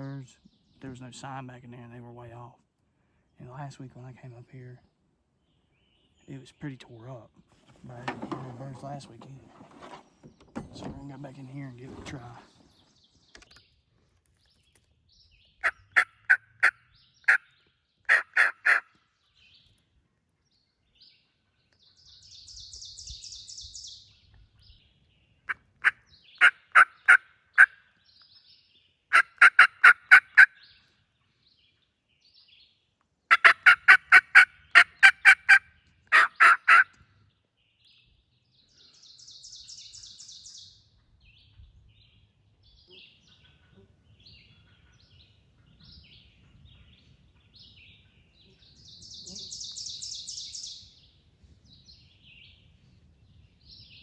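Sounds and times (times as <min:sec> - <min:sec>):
turkey yelps: 0:15.6 - 0:17.4, 0:18.1 - 0:18.8, 0:25.5 - 0:27.8, 0:29.1 - 0:30.6, 0:33.3 - 0:37.0.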